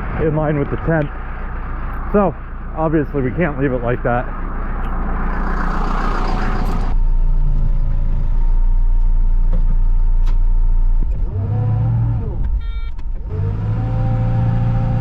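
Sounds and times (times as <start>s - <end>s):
diesel engine running: 0.0s - 15.0s
backup alarm beeping: 12.6s - 13.0s.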